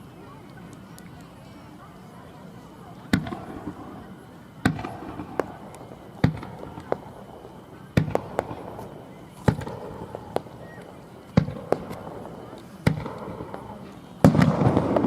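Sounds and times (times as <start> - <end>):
fireworks cracking: 2.8 - 15.0
fireworks booming: 3.1 - 15.0.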